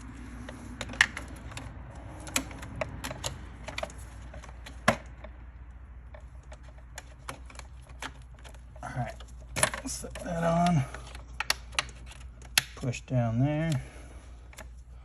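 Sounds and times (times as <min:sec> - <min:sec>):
plastic parts clicking and tapping: 0:00.4 - 0:12.8
sharp plastic clacks: 0:00.4 - 0:12.9.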